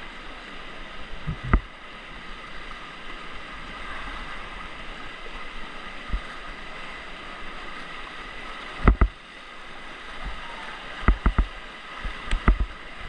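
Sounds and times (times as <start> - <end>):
river water rushing: 0.0 - 13.0
wind on microphone: 1.2 - 1.7, 8.8 - 9.2, 10.1 - 13.0.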